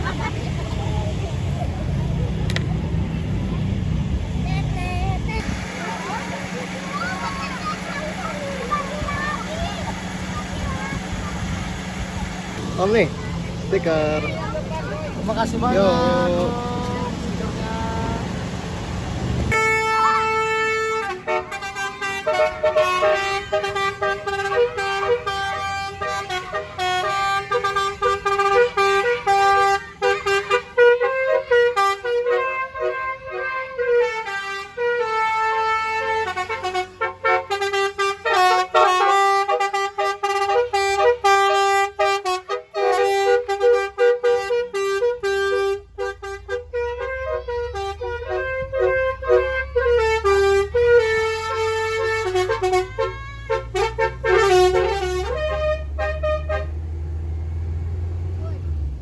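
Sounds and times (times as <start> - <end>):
tuned air horns playing melody: 19.5 - 56.9.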